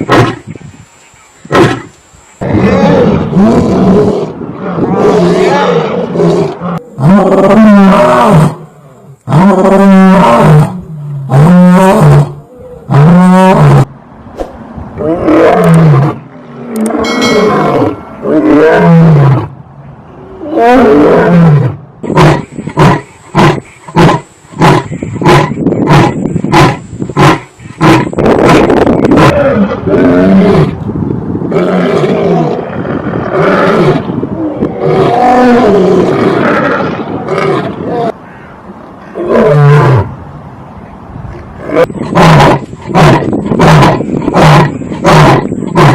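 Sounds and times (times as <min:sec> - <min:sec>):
lion roaring: 0:01.6 - 0:13.9, 0:31.5 - 0:38.2.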